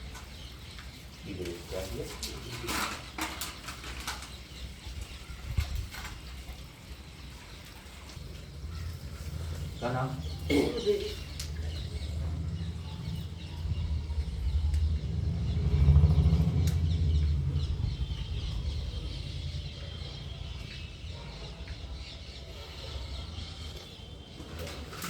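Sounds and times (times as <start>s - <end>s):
faint bird calls: 0.0s - 25.0s
vehicle engine passing by: 8.1s - 25.0s.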